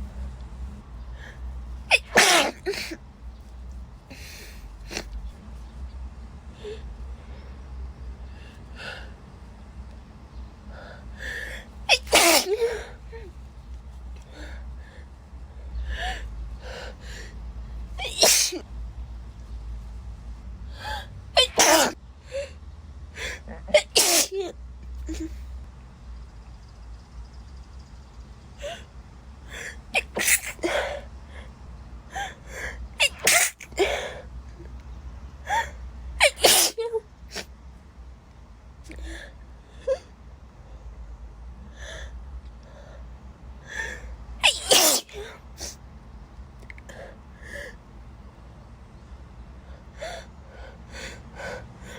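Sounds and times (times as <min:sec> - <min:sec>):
woman sneezing: 0:01.9 - 0:03.0, 0:11.9 - 0:12.7, 0:18.0 - 0:18.6, 0:21.4 - 0:22.0, 0:23.5 - 0:24.5, 0:30.0 - 0:30.7, 0:33.0 - 0:33.8, 0:36.2 - 0:37.5, 0:44.4 - 0:45.8.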